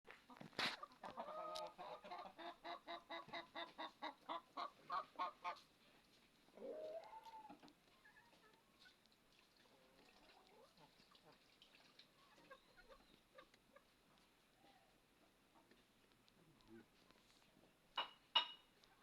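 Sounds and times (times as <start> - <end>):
bird calling: 6.6 - 7.6.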